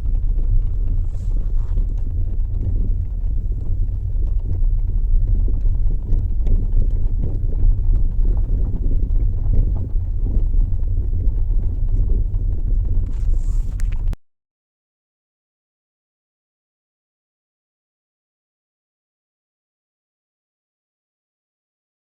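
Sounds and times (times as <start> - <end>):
car road rumble: 0.0 - 14.2.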